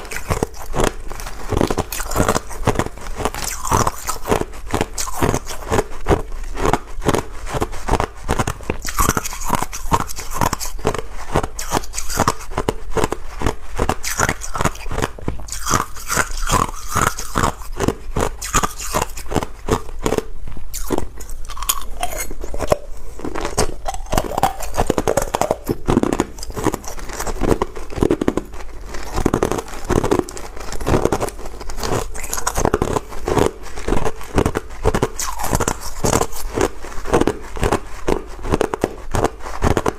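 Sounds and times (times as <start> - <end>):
ice crunching: 20.8 - 38.8.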